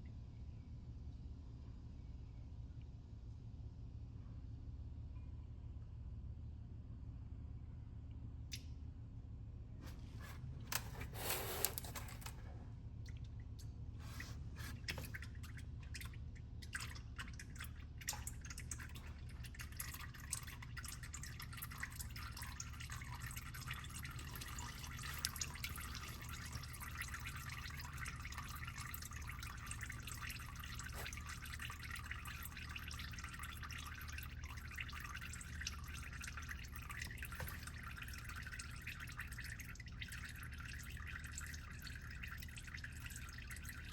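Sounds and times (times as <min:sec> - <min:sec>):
oil dripping into a pan: 0:14.8 - 0:43.9.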